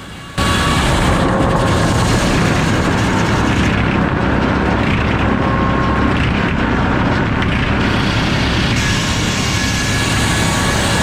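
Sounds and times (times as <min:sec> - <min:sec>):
circular saw cutting log: 0:07.8 - 0:11.0.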